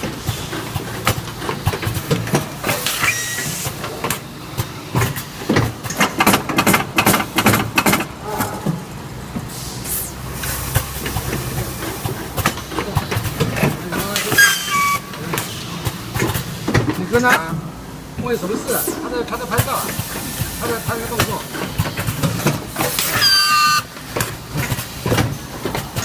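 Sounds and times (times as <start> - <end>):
mechanical clacks and knocks: 0.0 - 9.5, 10.4 - 17.6, 19.5 - 23.3, 23.9 - 26.0
packing machine hum: 0.0 - 26.0
air hiss bursts: 2.6 - 3.8, 9.5 - 12.4.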